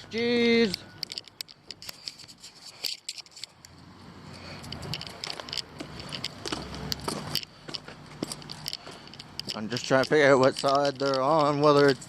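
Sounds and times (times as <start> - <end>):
truck engine rumble: 0.0 - 12.0
small clicks and scrapes: 0.7 - 12.0.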